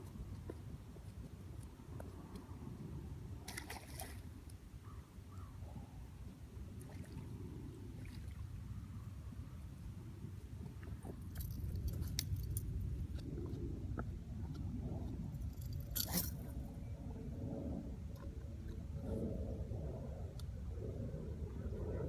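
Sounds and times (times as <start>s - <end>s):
steady low rumble: 4.3s - 22.0s
metallic clinks and rattles: 11.2s - 12.7s, 15.4s - 16.6s.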